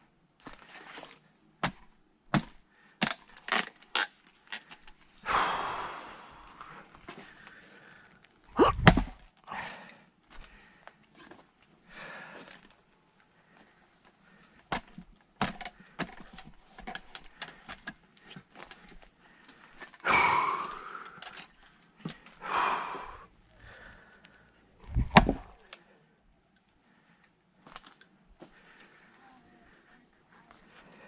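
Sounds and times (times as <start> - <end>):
axe striking a log: 1.6 - 3.2, 8.6 - 9.2, 14.7 - 16.2, 25.0 - 25.5
person exhaling loudly: 5.3 - 6.8, 8.6 - 9.8, 20.0 - 21.2, 22.4 - 23.8
knocks of wood being handled: 14.7 - 19.0, 24.9 - 25.6.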